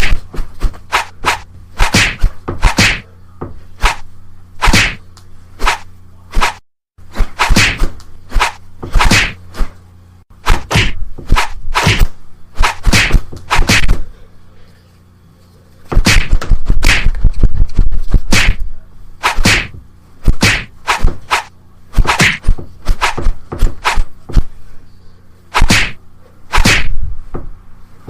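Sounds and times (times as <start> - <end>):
punch hits: 0.0 - 0.2, 0.9 - 3.1, 4.6 - 5.0, 7.2 - 9.4, 10.4 - 14.0, 15.9 - 17.2, 18.3 - 18.6, 19.2 - 24.5, 25.5 - 27.0.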